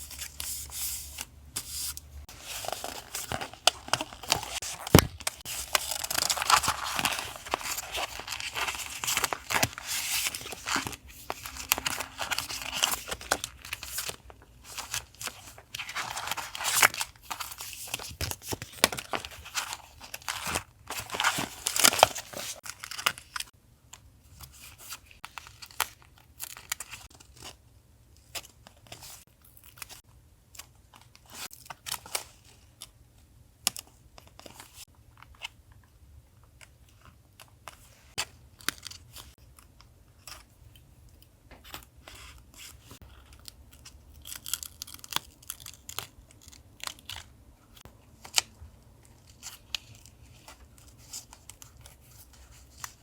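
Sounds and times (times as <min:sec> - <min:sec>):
paper tearing and crinkling: 0:01.0 - 0:23.2
paper taps and rustles: 0:02.6 - 0:07.8.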